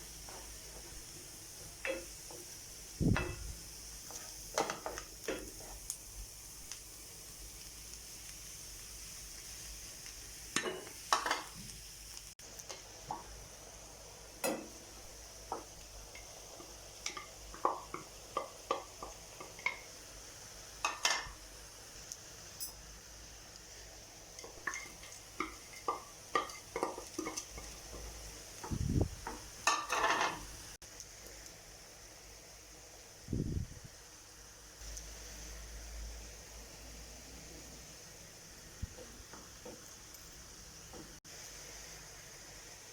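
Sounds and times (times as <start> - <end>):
frying sizzle: 0.0 - 42.9
utensil clinking against cookware: 3.1 - 3.5, 24.4 - 28.0, 29.2 - 30.4.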